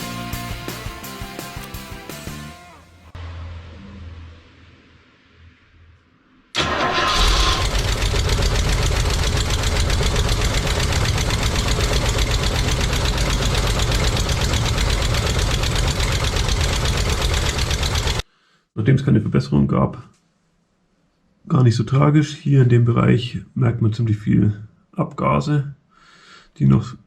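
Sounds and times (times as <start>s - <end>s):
car engine running: 6.6s - 18.2s
exhaust leak ticking: 6.6s - 18.2s.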